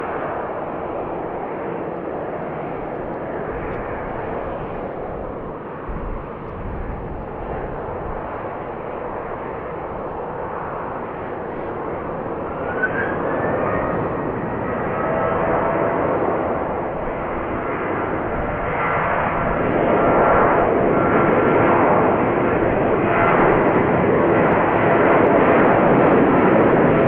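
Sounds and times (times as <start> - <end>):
jet engines on takeoff run: 0.0 - 27.0
faint rising engine whine: 12.3 - 15.5.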